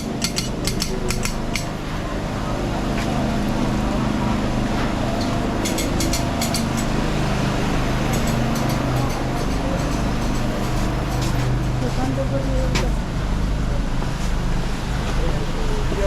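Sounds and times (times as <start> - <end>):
sharp clicks: 0.0 - 1.7
generators droning: 0.0 - 16.0.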